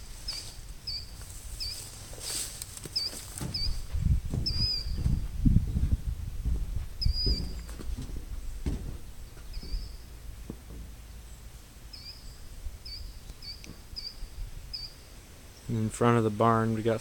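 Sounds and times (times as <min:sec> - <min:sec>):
bird chirping: 0:00.2 - 0:02.0, 0:02.9 - 0:06.1, 0:06.9 - 0:16.6
footsteps thudding: 0:02.1 - 0:11.3.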